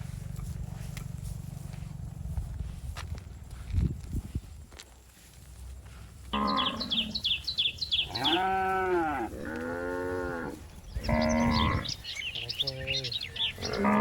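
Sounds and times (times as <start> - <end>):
cattle mooing: 6.3 - 14.0.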